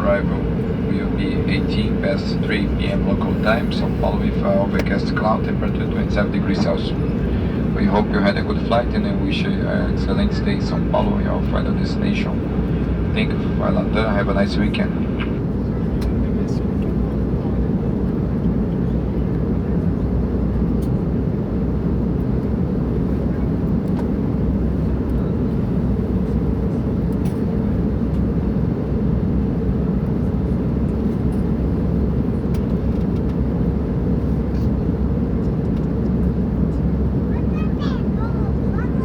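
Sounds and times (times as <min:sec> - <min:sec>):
airliner cabin jet roar: 0:00.0 - 0:39.0.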